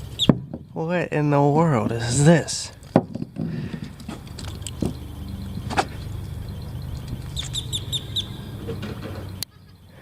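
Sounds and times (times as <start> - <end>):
bird chirping short notes: 7.3 - 9.8.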